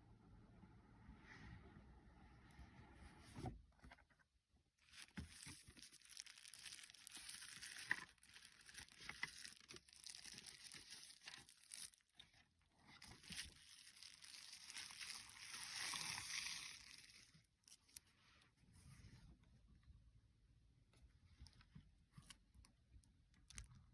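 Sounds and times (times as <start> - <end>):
packaging crinkling and tearing: 4.8 - 12.3, 13.0 - 18.0.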